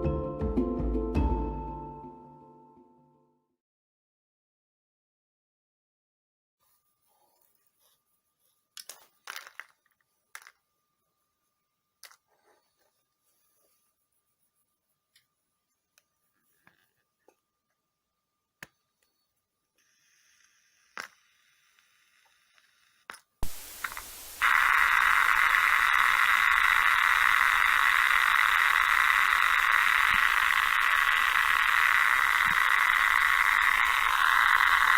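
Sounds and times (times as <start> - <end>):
loudspeaker static hiss: 23.4 - 34.9.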